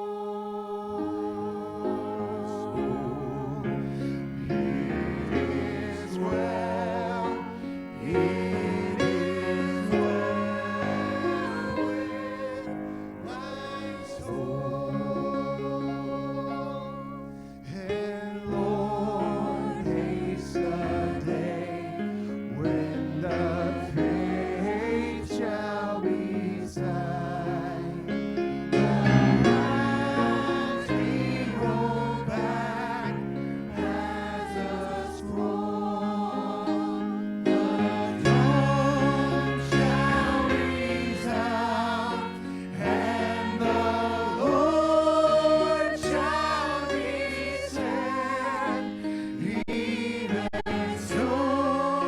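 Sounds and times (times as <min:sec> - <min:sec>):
voices singing in harmony: 0:00.0 - 0:52.0
sustained instrumental accompaniment: 0:00.8 - 0:17.7, 0:18.6 - 0:49.3.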